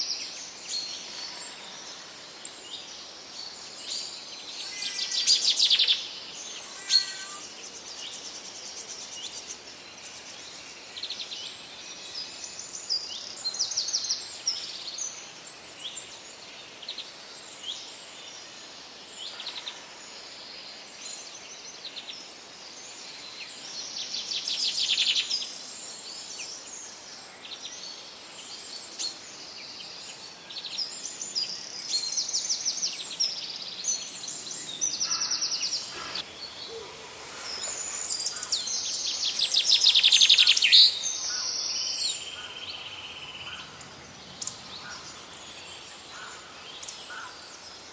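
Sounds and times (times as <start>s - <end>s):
faint steady hiss: 0.0s - 47.9s
birds chirping and trilling: 0.1s - 14.8s, 27.6s - 47.9s.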